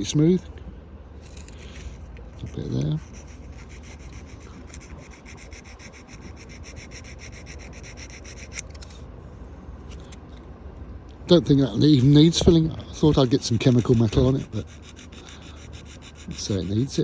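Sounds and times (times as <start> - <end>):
sandpaper rubbing on metal rim: 2.4 - 8.7, 13.0 - 17.0.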